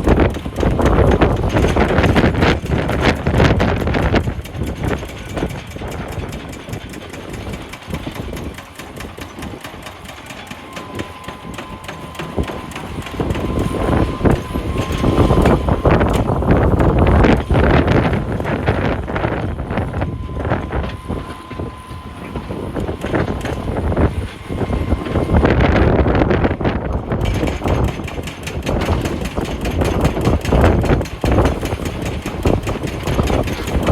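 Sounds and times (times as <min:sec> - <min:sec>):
wheel loader engine running: 0:00.0 - 0:33.9
steady high tone: 0:10.3 - 0:26.9.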